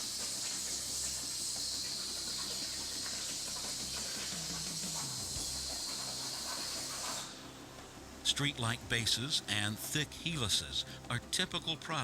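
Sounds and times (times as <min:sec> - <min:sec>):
plasma arc hissing: 0:00.0 - 0:07.4.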